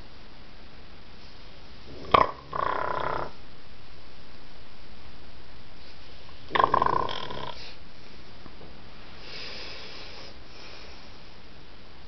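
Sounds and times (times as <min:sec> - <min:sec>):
man snoring: 0:02.0 - 0:03.4, 0:06.5 - 0:07.8.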